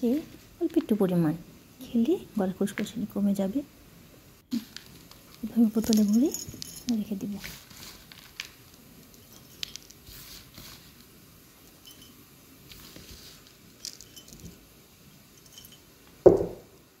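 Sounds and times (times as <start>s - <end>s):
dried ginger clicking and rattling: 4.5s - 14.7s
dull thump: 16.3s - 16.7s.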